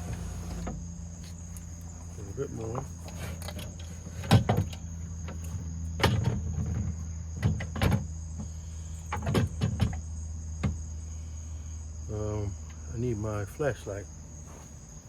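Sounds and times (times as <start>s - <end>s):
steady low hum: 0.0s - 15.0s
clicks and knocks of car window glass: 3.1s - 8.1s.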